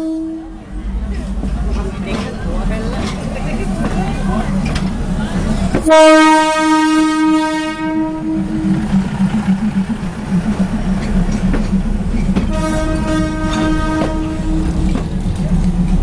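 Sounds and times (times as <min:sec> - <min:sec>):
train horn blasts: 0:00.0 - 0:00.6, 0:05.9 - 0:08.6, 0:12.3 - 0:14.9
low engine rumble: 0:00.0 - 0:16.0.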